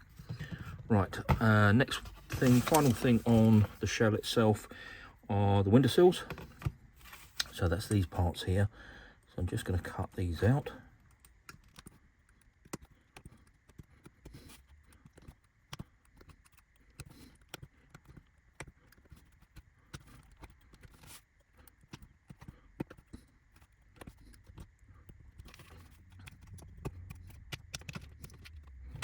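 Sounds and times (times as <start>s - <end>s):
wooden parts clicking: 14.9s - 29.0s.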